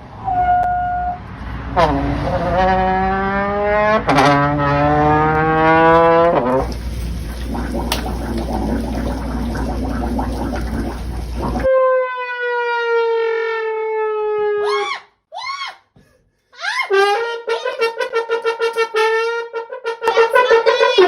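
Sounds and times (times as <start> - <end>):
slowly falling horn-like note: 0.0 - 6.4, 11.6 - 14.8.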